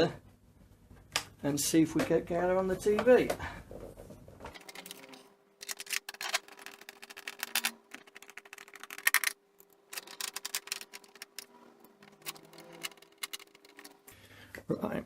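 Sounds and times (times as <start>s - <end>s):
computer parts clicking and clattering: 4.5s - 14.1s.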